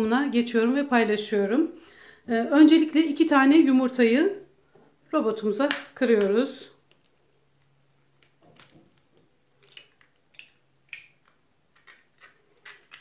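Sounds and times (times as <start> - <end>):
eggshells cracking and clicking: 5.7 - 13.0.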